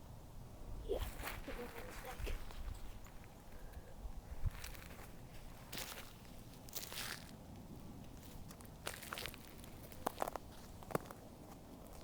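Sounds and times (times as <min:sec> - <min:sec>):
faint outdoor background: 0:00.0 - 0:12.0
soft footsteps on ground: 0:04.3 - 0:12.0.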